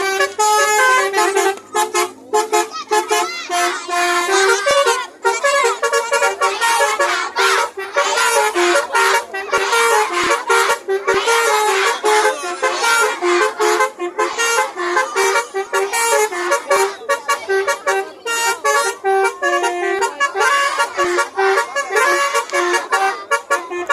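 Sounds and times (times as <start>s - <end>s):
musical air horn melody: 0.0s - 23.9s.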